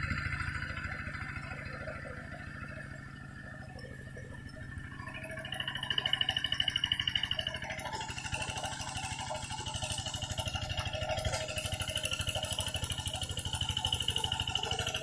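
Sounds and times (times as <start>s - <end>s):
diesel engine chugging: 0.0s - 15.0s.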